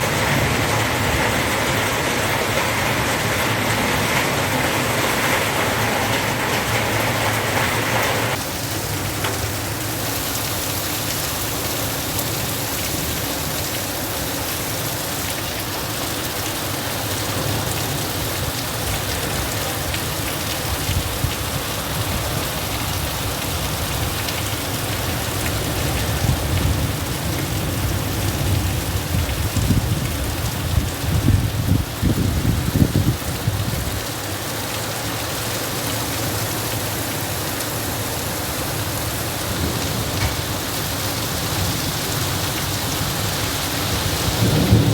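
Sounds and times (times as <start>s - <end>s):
low rumbling wind gusts: 0.0s - 9.8s, 17.5s - 34.3s, 38.2s - 44.9s
heavy rain falling: 0.0s - 44.9s.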